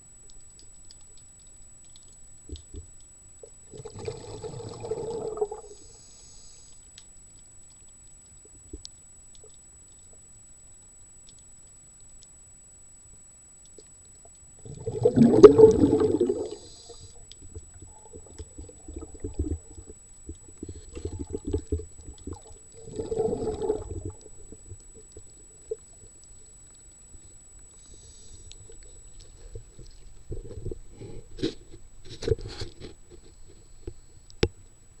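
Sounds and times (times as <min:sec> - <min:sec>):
water gurgling and sloshing: 0:00.6 - 0:06.1, 0:13.7 - 0:31.0.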